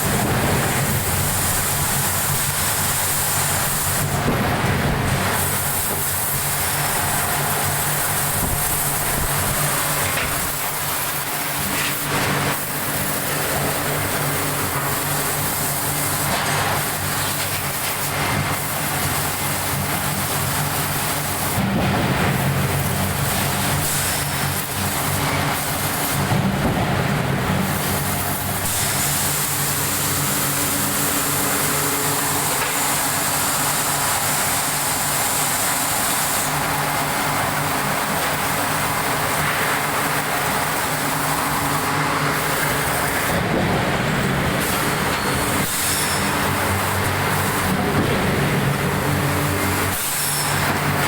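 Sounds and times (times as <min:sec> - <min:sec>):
forging press machinery hum: 0:00.0 - 0:51.0
hiss of air: 0:49.8 - 0:50.7.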